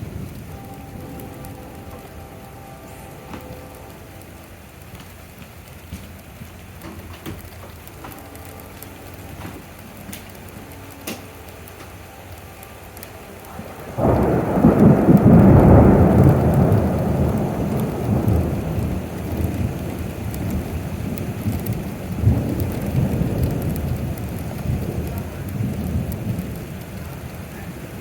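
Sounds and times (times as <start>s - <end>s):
steady rain: 0.0s - 28.0s
thunder rumbling: 0.0s - 28.0s.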